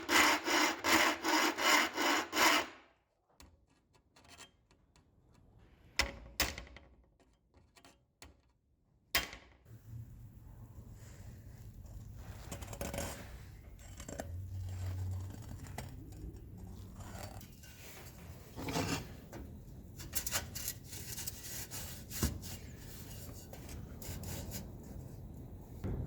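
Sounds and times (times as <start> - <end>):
scraping on steel saw blade: 20.0 - 24.7.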